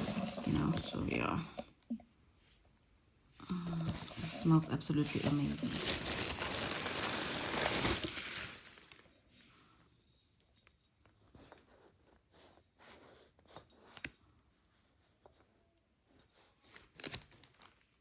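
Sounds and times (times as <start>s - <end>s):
crinkling and rustling: 3.7s - 9.3s, 16.4s - 18.0s.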